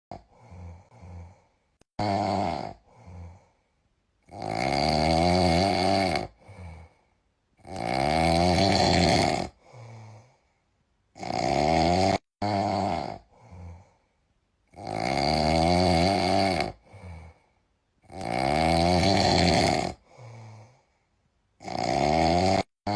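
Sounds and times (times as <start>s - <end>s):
capybara snoring: 2.0s - 3.6s, 4.2s - 7.0s, 7.6s - 10.4s, 11.2s - 14.0s, 14.7s - 20.8s, 21.6s - 22.9s.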